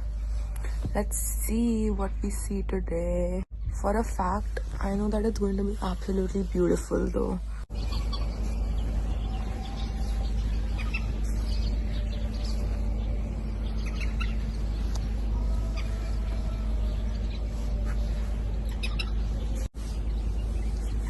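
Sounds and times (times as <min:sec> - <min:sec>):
low steady rumble: 0:00.0 - 0:21.0
bird chirps: 0:07.7 - 0:21.0.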